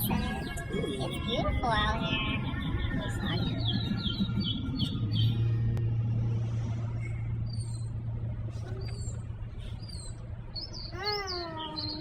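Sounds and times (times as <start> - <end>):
small birds chirping: 7.0 - 12.0.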